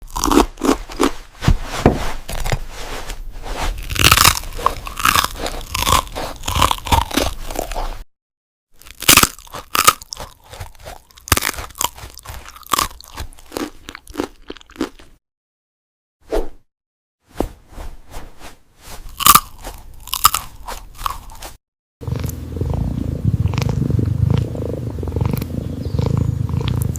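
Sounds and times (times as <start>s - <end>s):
cookie crunching: 0.0s - 1.2s, 3.8s - 8.0s, 8.8s - 15.2s, 19.1s - 22.4s.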